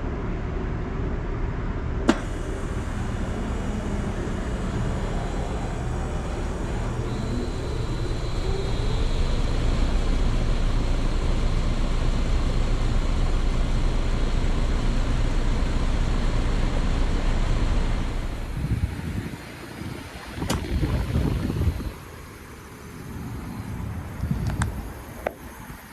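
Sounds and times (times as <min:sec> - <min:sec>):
heat pump compressor hum and fan: 0:00.0 - 0:25.9.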